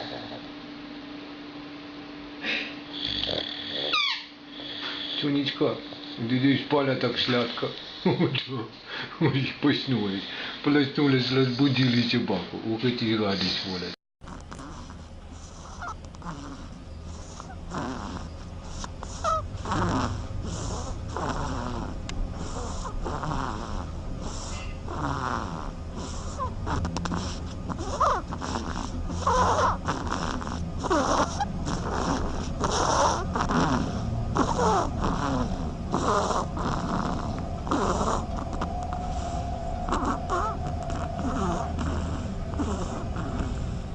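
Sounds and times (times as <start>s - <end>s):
animal snoring: 0.0s - 0.5s, 2.4s - 6.2s, 14.2s - 43.9s
low hum: 14.2s - 43.9s.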